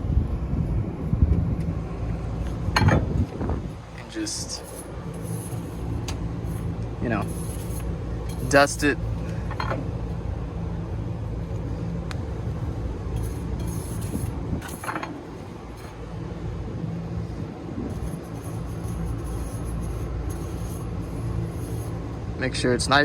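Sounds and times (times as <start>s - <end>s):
low mechanical hum: 0.0s - 23.0s
brush strokes on a tube: 4.1s - 8.8s, 17.9s - 22.2s.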